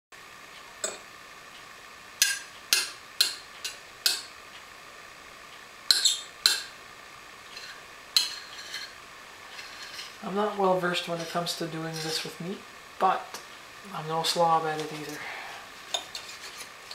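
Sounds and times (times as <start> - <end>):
metal utensil clinking on cookware: 7.6 - 8.9.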